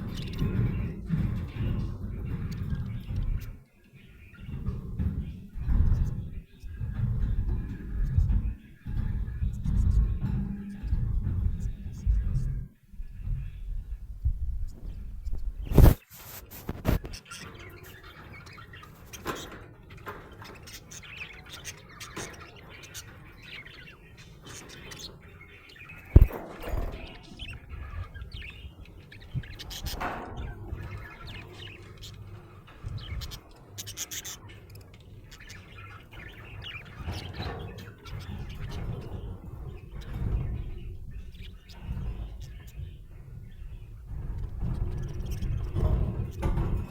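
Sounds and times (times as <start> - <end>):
budgerigar chirping: 17.0 - 43.0.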